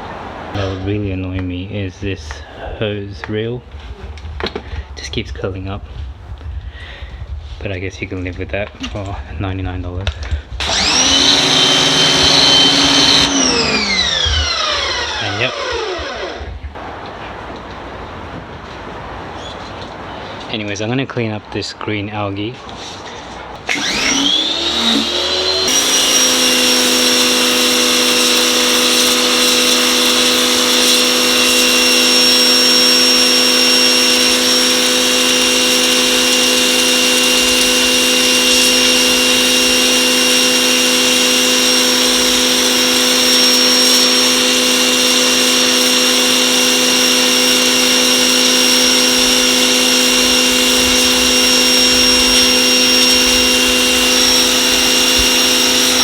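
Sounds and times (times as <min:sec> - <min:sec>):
pressure washer motor whine: 0:10.6 - 0:17.0, 0:23.7 - 0:56.0
high-pressure water jet spraying: 0:23.8 - 0:56.0.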